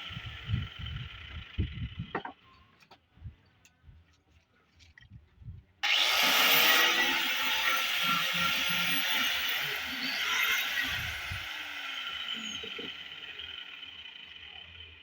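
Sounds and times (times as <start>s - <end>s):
angle grinder sanding wood: 5.8s - 14.8s.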